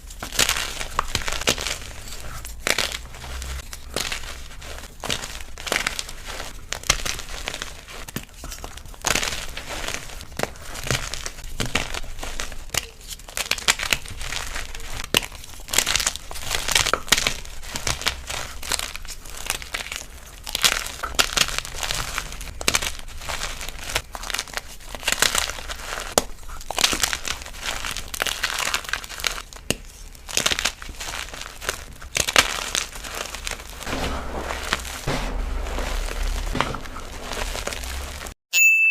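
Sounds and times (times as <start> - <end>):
chalk crunching and crackling: 0.0 - 38.4.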